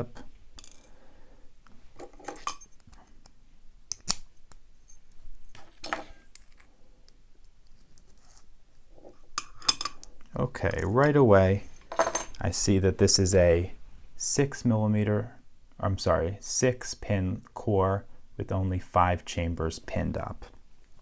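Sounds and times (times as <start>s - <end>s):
metallic clicks of padlock: 3.9s - 4.6s.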